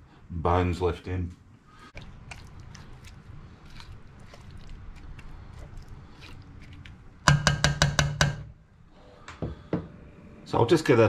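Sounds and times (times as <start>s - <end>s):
faint knocks: 9.2s - 10.0s.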